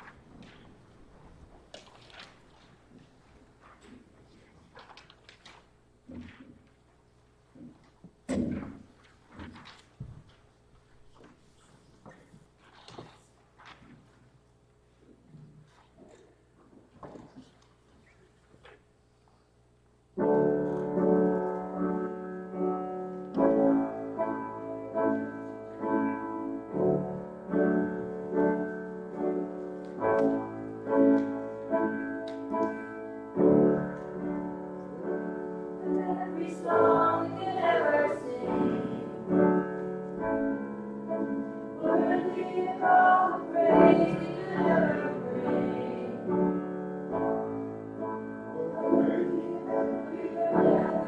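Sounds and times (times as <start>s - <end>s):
piano playing hymn chords: 20.2s - 51.0s
voices singing: 34.9s - 39.6s, 41.7s - 46.6s, 48.6s - 51.0s.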